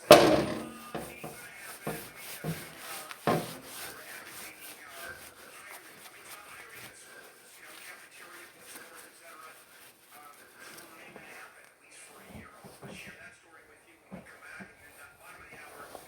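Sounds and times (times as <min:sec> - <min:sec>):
knocks: 0:00.0 - 0:02.6
hand scrubbing a hard surface: 0:00.0 - 0:16.0.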